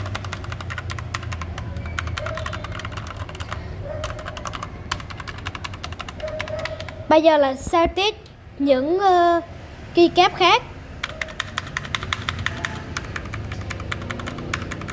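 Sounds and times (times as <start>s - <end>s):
mechanical keyboard typing: 0.0s - 7.0s, 11.0s - 14.9s.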